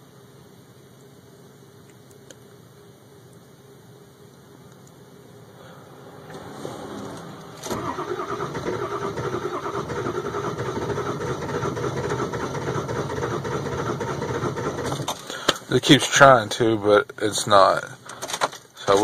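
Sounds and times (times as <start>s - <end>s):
engine starter cranking: 6.2s - 15.5s.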